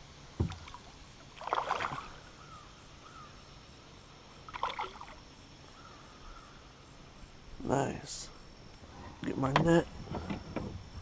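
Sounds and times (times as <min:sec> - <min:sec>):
fish splashing in water: 0:00.4 - 0:02.3, 0:04.5 - 0:05.3.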